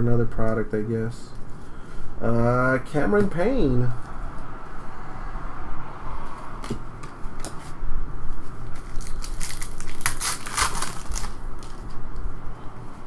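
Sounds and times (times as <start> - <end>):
wrapper tearing and crinkling: 8.7 - 12.0.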